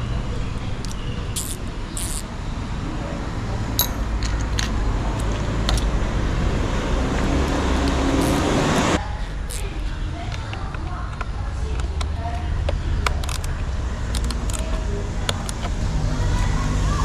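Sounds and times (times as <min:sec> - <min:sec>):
road traffic rumble: 0:00.0 - 0:17.0
hand tools clicking: 0:00.8 - 0:02.3, 0:03.8 - 0:05.9, 0:13.0 - 0:15.7.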